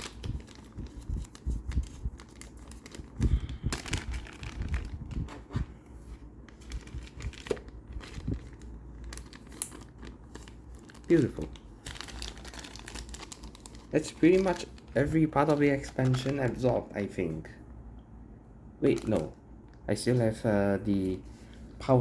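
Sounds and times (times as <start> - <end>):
plastic wrapping crinkling: 0.0 - 17.1, 18.8 - 19.8.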